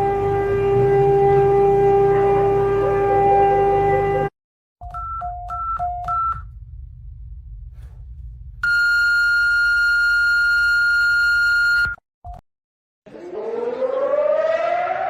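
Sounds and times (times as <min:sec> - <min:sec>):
low rumble: 0:06.5 - 0:08.6.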